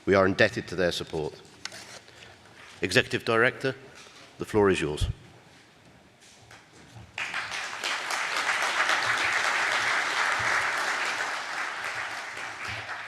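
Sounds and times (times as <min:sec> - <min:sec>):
audience applauding: 0:07.2 - 0:13.0.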